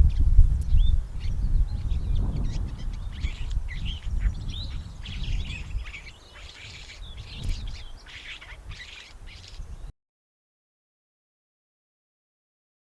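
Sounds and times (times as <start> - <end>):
bird chirping: 0.0 - 9.9.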